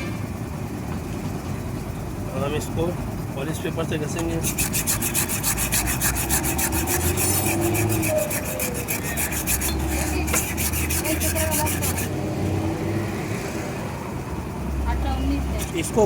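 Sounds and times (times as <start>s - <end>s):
emery paper sanding metal: 4.2s - 12.2s.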